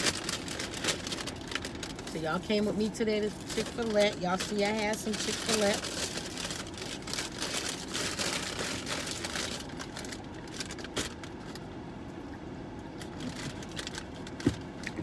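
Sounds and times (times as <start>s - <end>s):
paper bag rustling: 0.0s - 11.7s, 13.0s - 15.0s.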